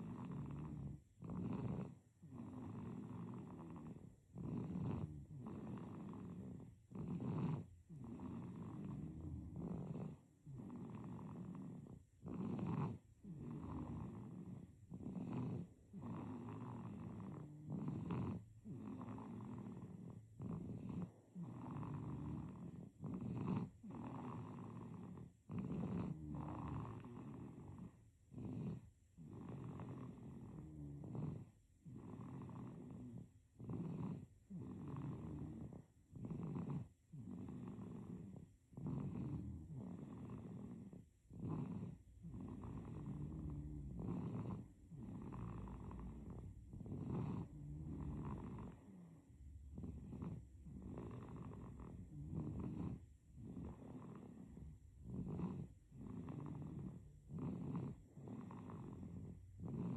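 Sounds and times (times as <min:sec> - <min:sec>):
baby snoring: 0:00.0 - 0:59.9.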